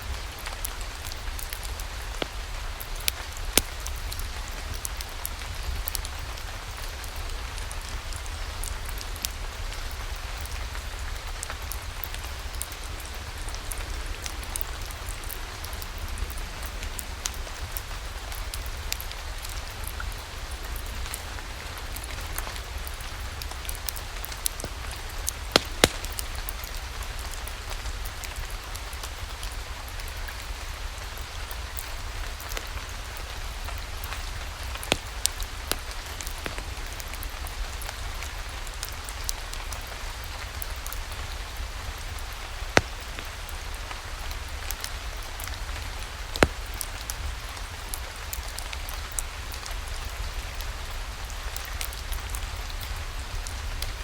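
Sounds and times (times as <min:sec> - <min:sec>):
steady rain falling: 0:00.0 - 0:54.0
wood fire crackling pops: 0:00.5 - 0:05.1, 0:22.0 - 0:27.7, 0:33.7 - 0:39.0, 0:40.5 - 0:49.2.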